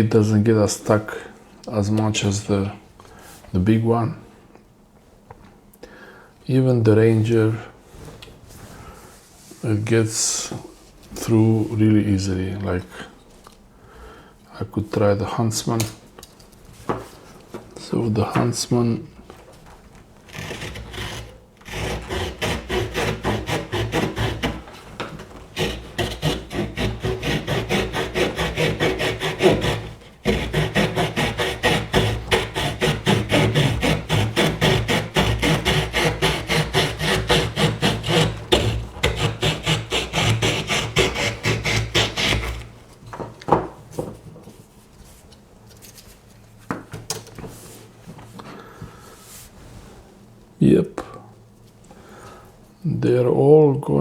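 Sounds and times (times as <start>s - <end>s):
small saw cutting a branch: 20.3s - 24.7s, 25.5s - 42.6s.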